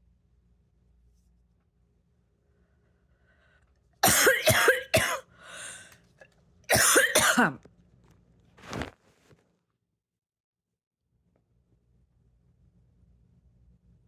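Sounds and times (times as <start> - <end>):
person's explosive bursts of breath: 5.3 - 5.9
person breathing in: 5.3 - 6.0.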